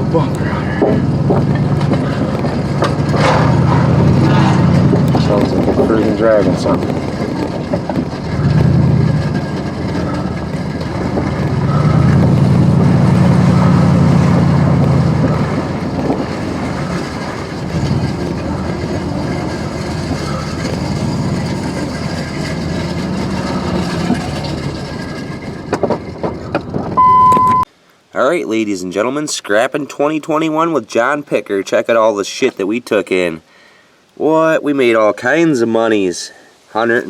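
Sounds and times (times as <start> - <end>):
heavy vehicle engine rumbling: 0.0 - 27.7.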